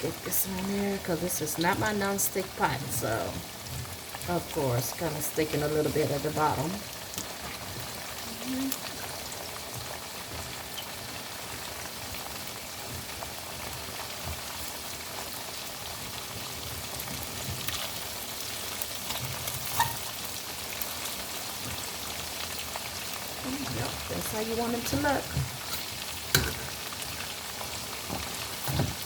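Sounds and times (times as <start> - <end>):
chicken sizzling in hot oil: 0.0 - 29.0.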